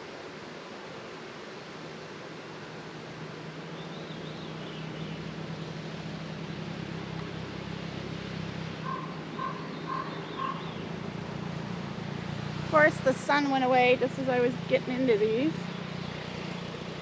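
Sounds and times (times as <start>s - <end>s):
honeybees buzzing: 3.7s - 17.0s
bird calling: 8.8s - 11.6s.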